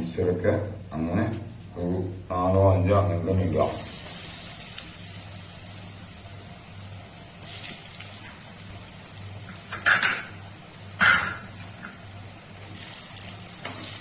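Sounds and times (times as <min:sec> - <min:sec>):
potatoes sizzling in oil: 0:03.3 - 0:14.0.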